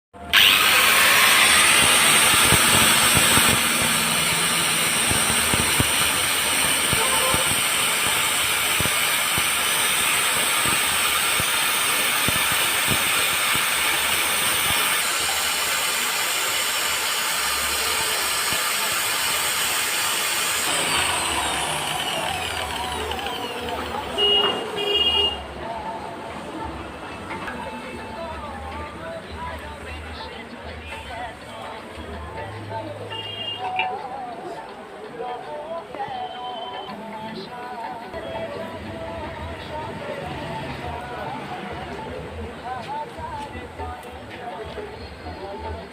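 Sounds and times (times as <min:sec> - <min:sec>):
loud steady hiss: 0:00.2 - 0:26.0.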